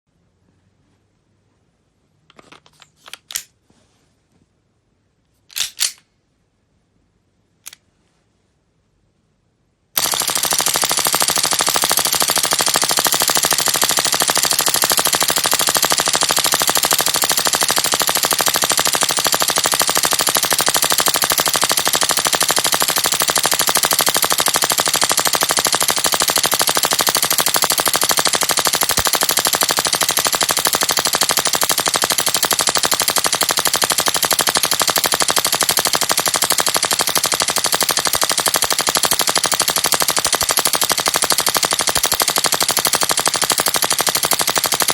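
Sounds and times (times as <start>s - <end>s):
airsoft pistol rapid clatter: 2.3s - 3.5s, 5.5s - 6.0s, 10.0s - 44.9s.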